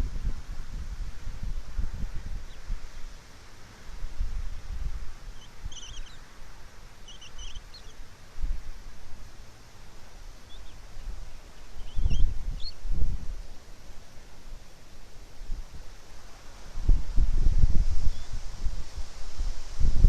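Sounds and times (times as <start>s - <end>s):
outdoor background noise: 0.0s - 20.0s
high bird chirps: 5.4s - 6.3s, 7.0s - 8.0s, 10.4s - 10.8s, 11.6s - 12.8s.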